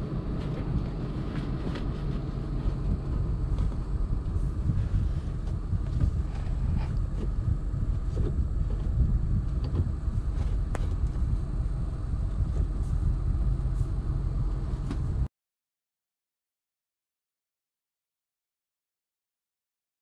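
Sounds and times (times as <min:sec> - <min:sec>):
car rumbling: 0:00.0 - 0:15.3.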